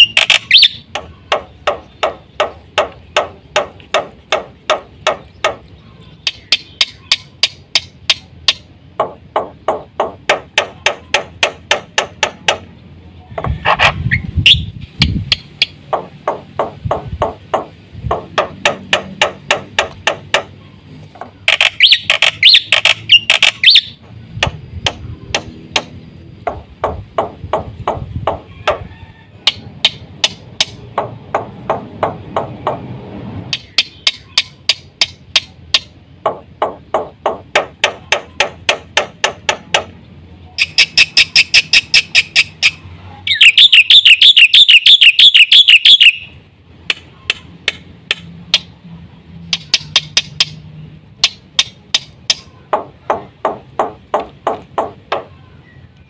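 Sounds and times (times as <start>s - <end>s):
bird clicking notes: 0.0s - 9.1s, 14.5s - 20.6s, 21.4s - 27.0s, 33.5s - 36.0s, 40.6s - 46.3s, 49.4s - 50.6s, 51.2s - 52.5s
bird warbling song: 0.0s - 9.1s, 20.4s - 26.2s, 33.5s - 37.1s, 40.0s - 46.4s, 55.1s - 56.0s.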